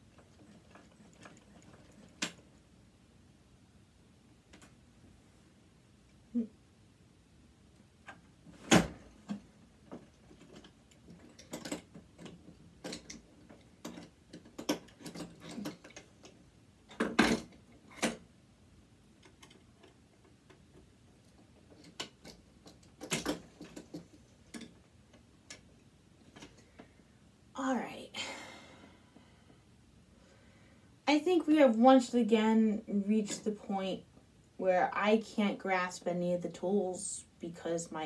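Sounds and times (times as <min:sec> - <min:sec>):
metal parts and tools clinking: 0:10.0 - 0:18.2, 0:21.3 - 0:24.8.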